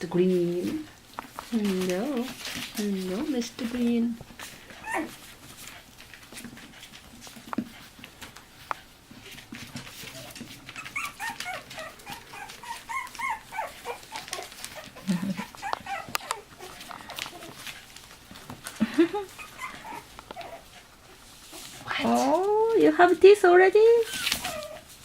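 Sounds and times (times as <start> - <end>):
faint scratching: 0.2 - 23.4
puppy whimpering: 4.6 - 5.8, 9.2 - 18.2, 19.0 - 22.5, 24.0 - 25.0.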